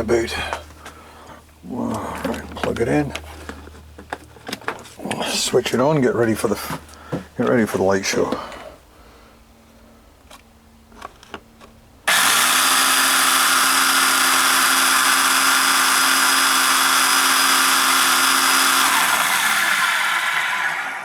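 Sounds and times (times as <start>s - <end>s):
vacuum cleaner motor whining: 12.1s - 21.0s.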